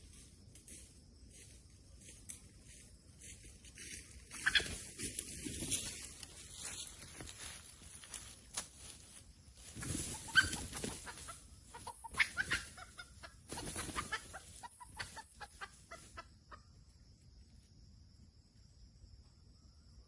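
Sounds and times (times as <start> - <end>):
chicken clucking: 4.3 - 4.9, 10.1 - 17.0.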